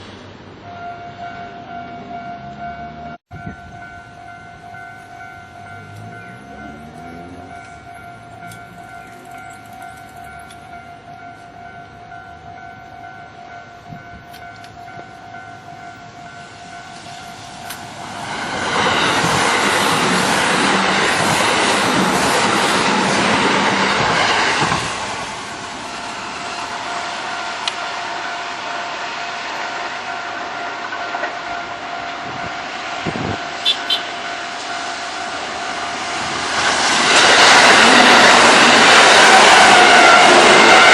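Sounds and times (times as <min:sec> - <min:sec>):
electric train passing: 0:00.0 - 0:40.9
railroad crossing bell ringing: 0:00.6 - 0:40.9.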